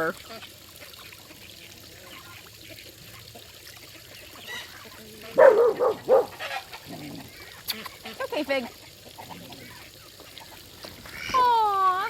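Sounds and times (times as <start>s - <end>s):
running water trickling: 0.0s - 12.0s
dog barking loudly: 5.4s - 6.5s.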